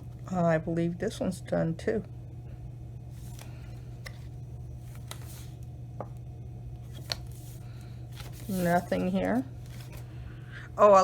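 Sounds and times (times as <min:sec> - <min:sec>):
steady low hum: 0:00.0 - 0:11.0
paper and card clicks and taps: 0:04.9 - 0:06.2, 0:06.9 - 0:07.5.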